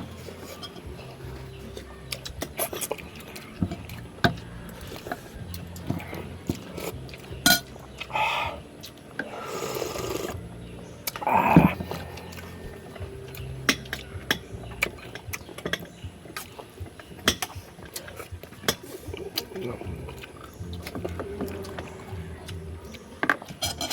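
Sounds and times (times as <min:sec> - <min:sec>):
cutlery clicking on dishes: 0:23.2 - 0:23.9.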